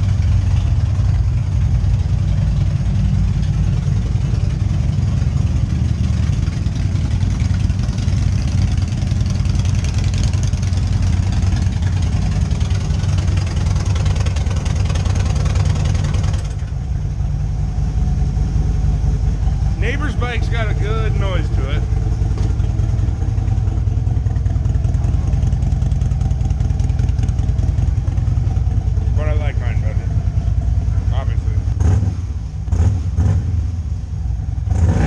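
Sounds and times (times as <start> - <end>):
motorcycle engine idling: 0.0 - 34.9.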